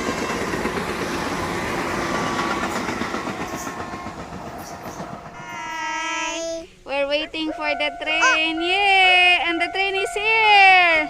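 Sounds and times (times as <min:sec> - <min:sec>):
train wheels clattering on track: 0:00.0 - 0:05.6.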